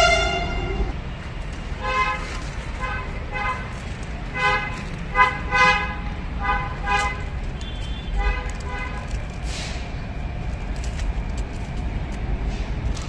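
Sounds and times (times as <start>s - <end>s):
vehicle horns honking: 0.0s - 1.0s, 1.8s - 3.7s, 4.3s - 9.0s
low traffic rumble: 0.0s - 13.0s.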